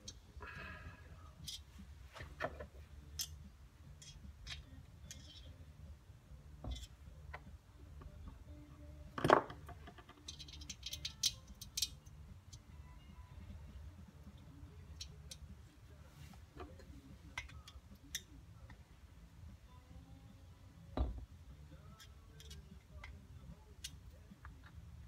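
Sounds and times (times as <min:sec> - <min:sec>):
tools clicking and tapping: 0:01.4 - 0:05.6, 0:06.6 - 0:08.4, 0:09.2 - 0:12.7, 0:14.2 - 0:15.6, 0:16.5 - 0:18.8, 0:21.0 - 0:24.8.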